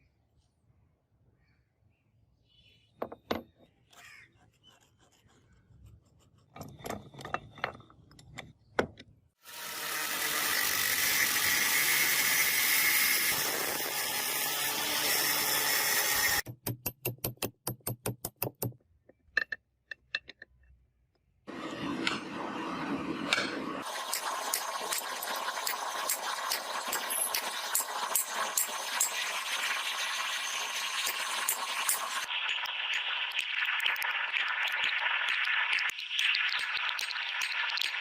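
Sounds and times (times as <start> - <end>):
power tool running: 9.4 - 16.5
scattered clicks and knocks: 16.4 - 20.8.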